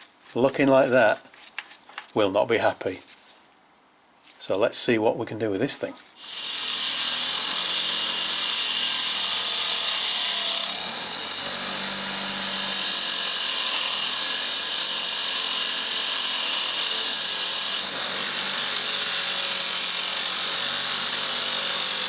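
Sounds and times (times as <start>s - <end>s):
power tool abrading metal: 6.2s - 22.0s.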